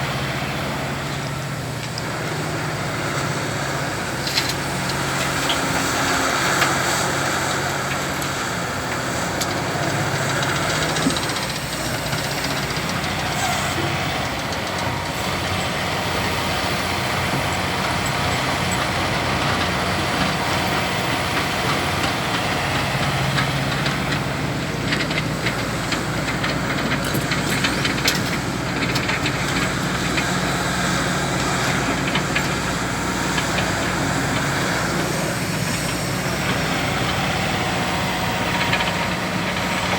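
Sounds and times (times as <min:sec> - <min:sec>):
excavator diesel engine running: 0:00.0 - 0:39.9
clicks and clanks: 0:24.8 - 0:30.3.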